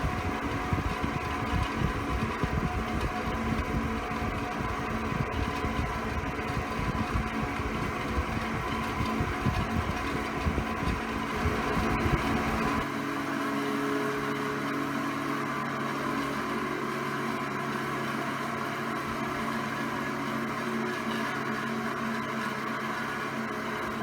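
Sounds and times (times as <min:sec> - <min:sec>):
fluttering bearing rumble: 0:00.0 - 0:12.9
box fan motor hum: 0:00.0 - 0:24.0.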